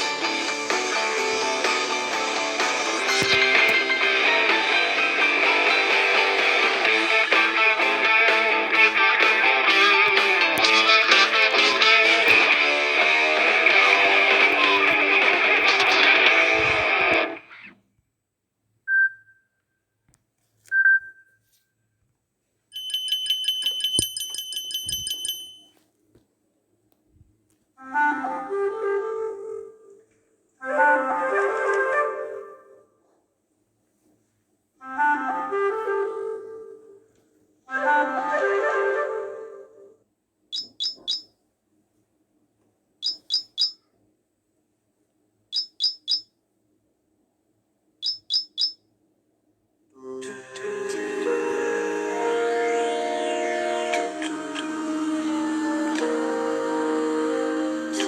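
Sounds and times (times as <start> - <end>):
short single beeps: 40.6 - 41.3, 43.0 - 43.8, 45.6 - 46.3, 48.0 - 48.8.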